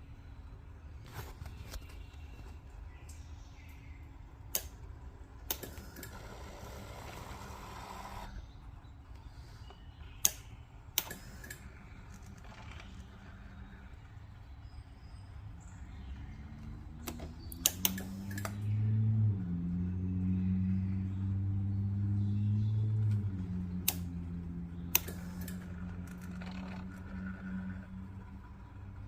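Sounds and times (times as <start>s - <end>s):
low electrical hum: 0.0s - 29.0s
sharp clicks: 4.4s - 8.4s, 9.1s - 13.7s, 16.6s - 18.8s, 22.9s - 28.3s.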